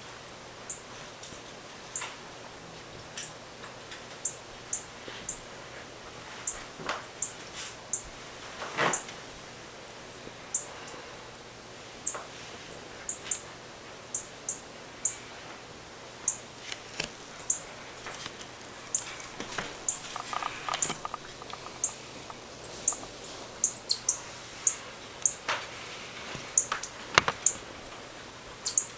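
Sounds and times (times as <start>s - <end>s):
small birds chirping: 16.3s - 25.4s, 28.6s - 28.9s.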